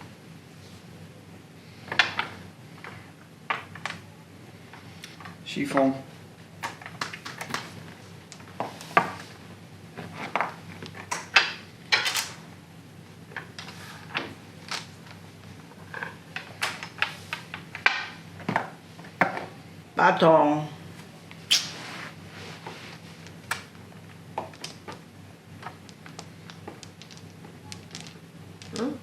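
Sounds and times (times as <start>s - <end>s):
mahjong tiles clacking: 25.6s - 29.0s.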